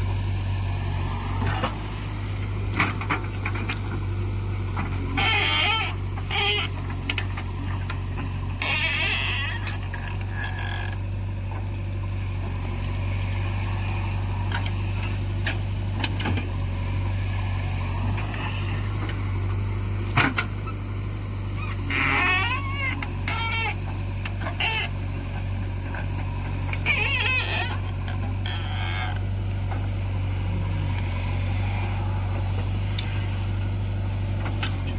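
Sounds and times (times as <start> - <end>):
diesel engine droning: 0.0 - 34.9
wavering animal calls: 1.2 - 11.2, 20.4 - 34.9
sharp clicks and knocks: 1.3 - 12.0, 14.4 - 16.6, 21.7 - 31.7.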